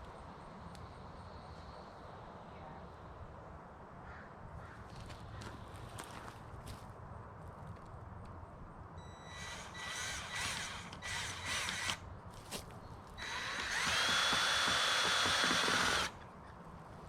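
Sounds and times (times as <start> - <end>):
power drill running: 9.0 - 12.0, 13.2 - 16.3.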